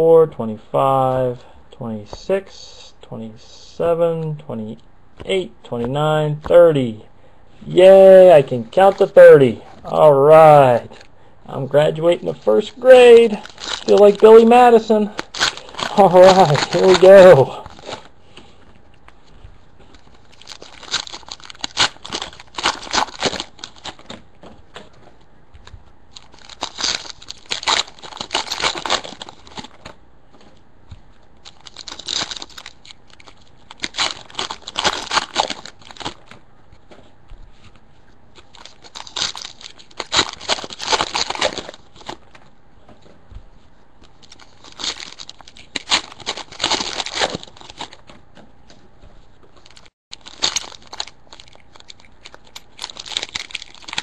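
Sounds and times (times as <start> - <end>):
foil wrappers tearing and crinkling: 13.0 - 18.1, 19.9 - 24.2, 26.1 - 30.0, 31.4 - 36.4, 38.4 - 42.4, 44.0 - 48.1, 49.6 - 54.0.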